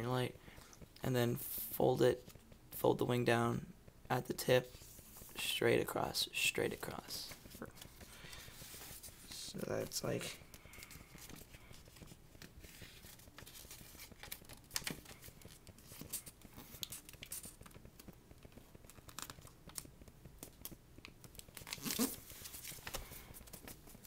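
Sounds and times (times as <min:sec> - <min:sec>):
paper rustling and crinkling: 0:06.7 - 0:24.0.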